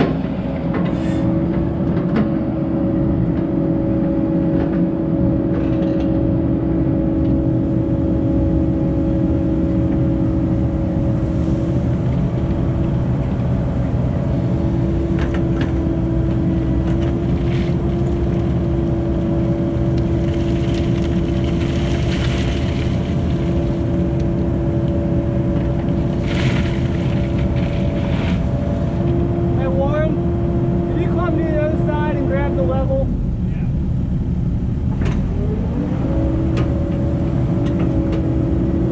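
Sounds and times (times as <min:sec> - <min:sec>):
excavator diesel engine running: 0:08.5 - 0:38.9.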